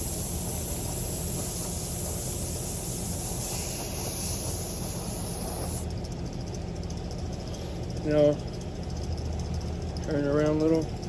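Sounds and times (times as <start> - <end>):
spray paint can hissing: 0.0 - 5.9
low steady rumble: 0.0 - 11.0.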